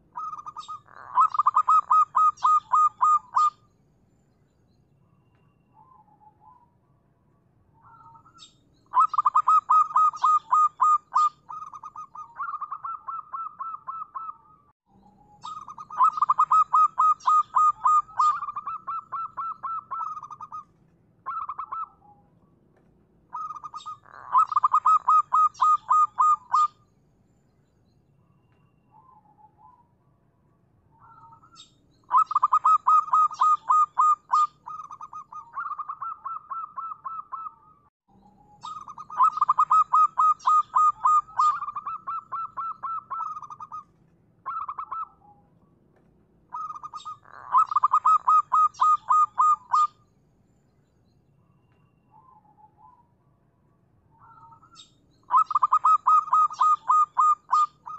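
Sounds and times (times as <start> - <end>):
dove cooing: 0.0 - 3.6, 7.8 - 14.5, 15.4 - 22.2, 23.3 - 26.8, 31.0 - 37.7, 38.6 - 45.4, 46.5 - 50.0, 54.2 - 57.9.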